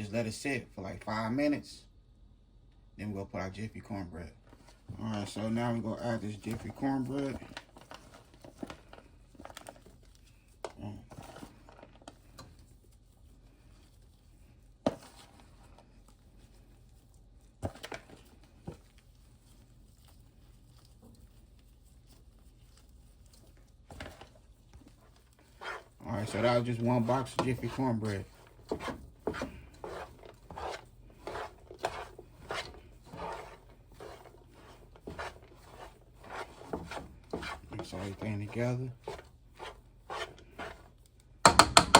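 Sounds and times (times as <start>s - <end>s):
spoon scraping in a pot: 11.1s - 12.6s, 25.4s - 41.0s
kitchen knocks and clatters: 41.4s - 41.9s.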